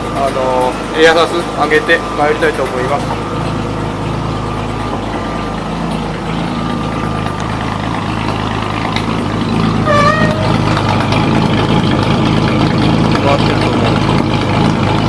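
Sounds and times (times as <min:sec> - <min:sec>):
truck engine idling: 0:00.0 - 0:15.0
short wavering squeak: 0:09.8 - 0:10.8.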